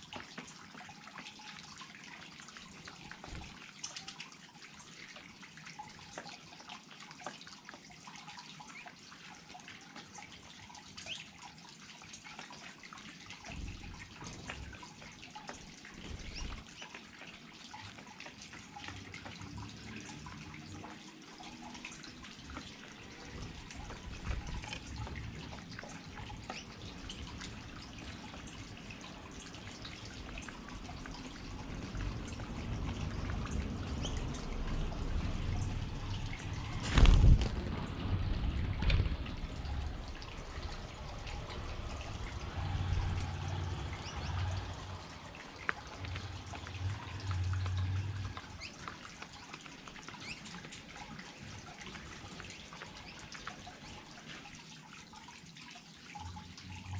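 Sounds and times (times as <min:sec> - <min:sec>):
garden waterfall splashing: 0:00.0 - 0:56.9
water dripping: 0:00.0 - 0:56.9
low rumble: 0:30.7 - 0:48.6.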